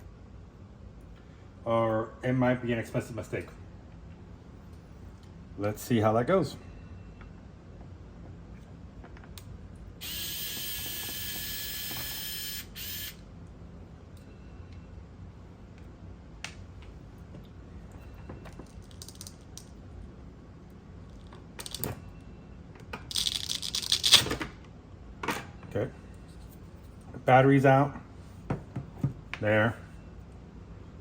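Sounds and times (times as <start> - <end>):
electric screwdriver whirring: 10.0 - 13.2.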